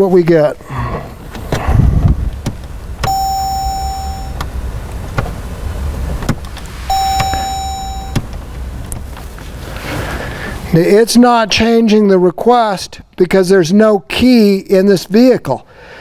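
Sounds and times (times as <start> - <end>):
low hum: 0.8 - 9.8
push button clicks: 2.4 - 5.4, 6.2 - 9.0
electronic beeps: 3.0 - 4.5, 6.9 - 8.2.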